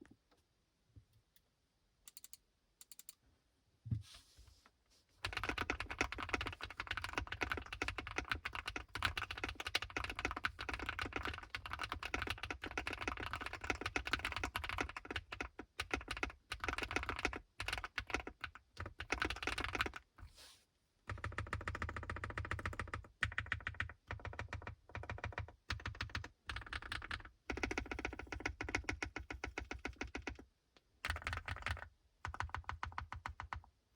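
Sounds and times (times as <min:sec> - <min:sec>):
mechanical keyboard typing: 0:05.2 - 0:20.1, 0:21.1 - 0:33.7.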